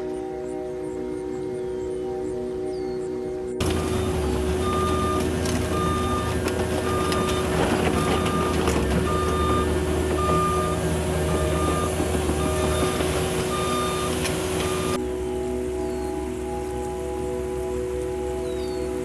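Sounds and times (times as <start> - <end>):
backup alarm beeping: 3.6 - 15.0
heavy vehicle engine running: 3.6 - 19.0.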